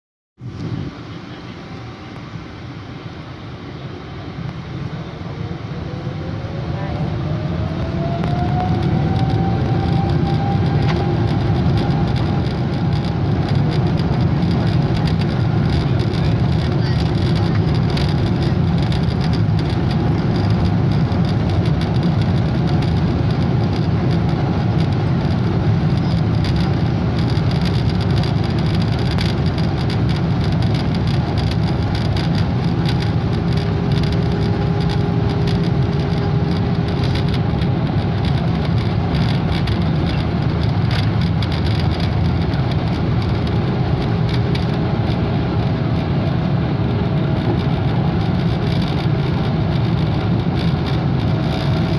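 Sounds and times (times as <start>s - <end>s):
jet engines rumbling: 0.4s - 51.9s.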